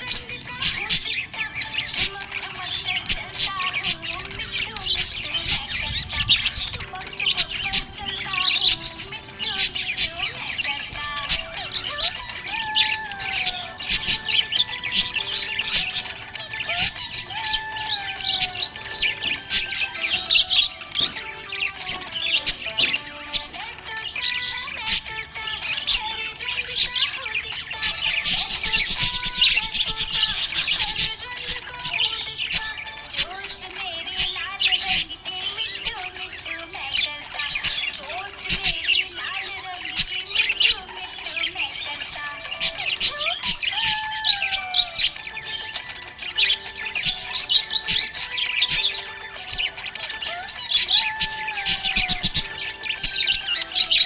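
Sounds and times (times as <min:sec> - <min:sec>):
parrots chirping and squawking: 0:00.0 - 0:54.0.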